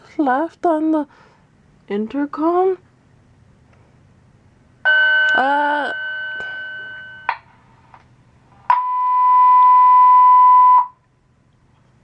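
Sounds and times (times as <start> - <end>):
fire alarm steady tone: 4.9 - 7.4, 8.7 - 11.0
lower fire alarm tone: 4.9 - 7.4, 8.7 - 11.0.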